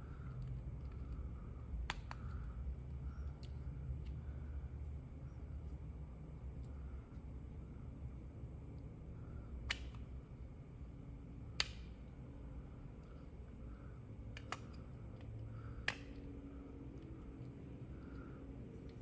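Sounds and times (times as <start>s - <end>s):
low steady hum: 0.0s - 19.0s
sharp single clicks: 9.6s - 10.1s.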